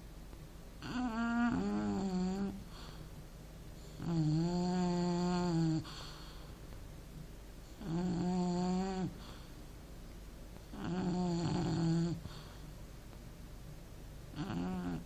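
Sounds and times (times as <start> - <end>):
person snoring: 4.0 - 6.0, 7.8 - 9.2, 10.8 - 12.3, 14.4 - 15.0.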